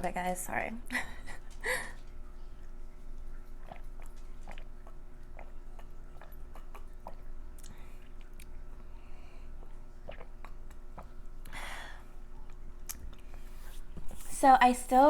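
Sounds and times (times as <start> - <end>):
person chewing food: 1.9 - 13.8.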